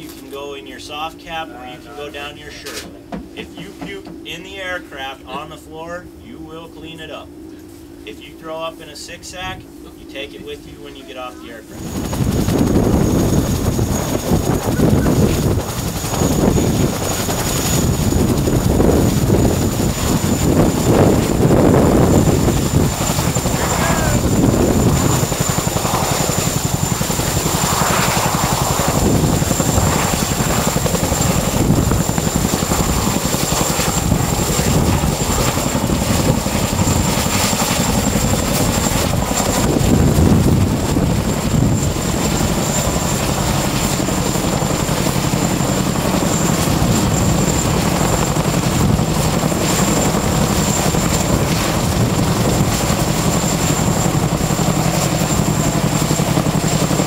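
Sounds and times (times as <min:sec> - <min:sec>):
high whine: 0:00.0 - 0:44.5
helicopter rotor and turbine drone: 0:00.0 - 0:57.0.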